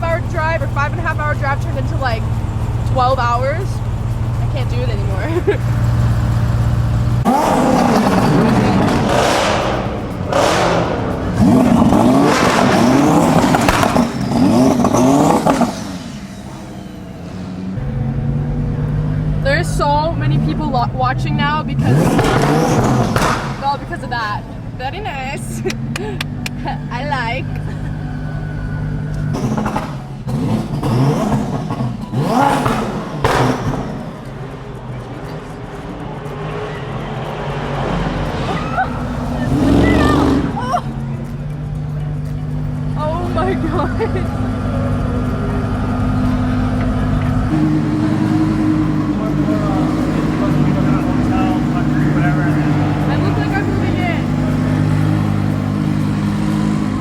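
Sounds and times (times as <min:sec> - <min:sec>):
sports car engines revving: 0:00.0 - 0:57.0
sharp crack: 0:07.3 - 0:16.2, 0:22.0 - 0:23.8, 0:29.2 - 0:34.3.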